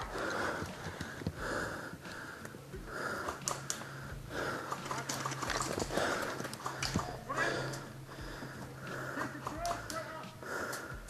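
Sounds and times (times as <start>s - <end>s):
heavy breathing close to microphone: 0.0s - 11.0s
sharp ticks: 3.2s - 3.9s.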